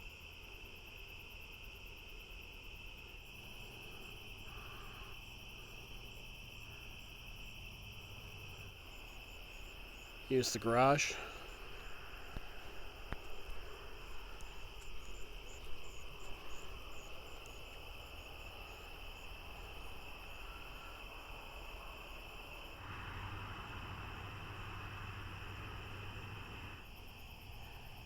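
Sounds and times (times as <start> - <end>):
night insects trilling: 0.0 - 28.0
low steady hum: 22.8 - 28.0.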